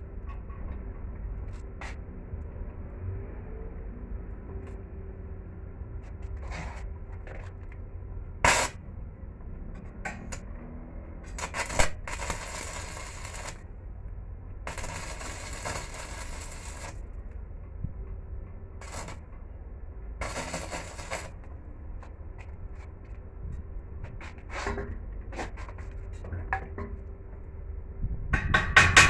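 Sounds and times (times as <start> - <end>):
crackling hiss: 14.7 - 17.0, 20.2 - 21.4.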